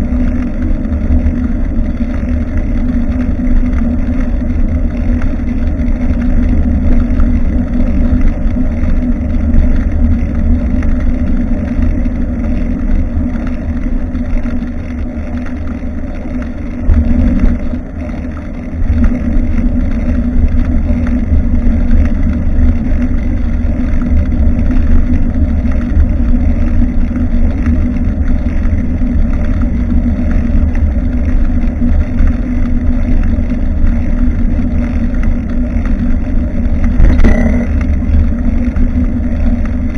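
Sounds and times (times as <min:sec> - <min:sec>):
wind buffeting microphone: 0:36.4 - 0:39.9.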